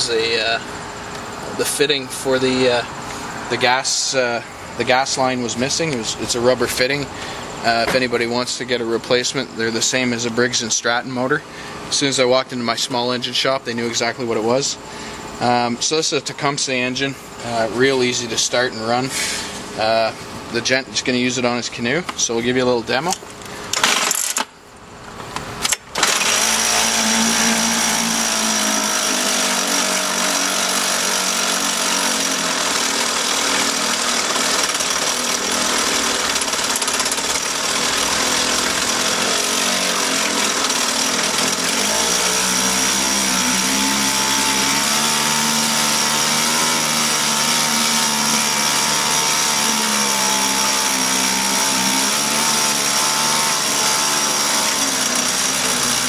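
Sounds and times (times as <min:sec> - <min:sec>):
outboard motor running: 0:26.0 - 0:56.0.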